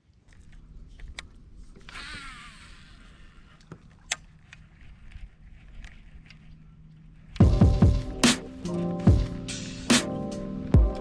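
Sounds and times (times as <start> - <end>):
fishing reel spool whirring: 1.8 - 4.8.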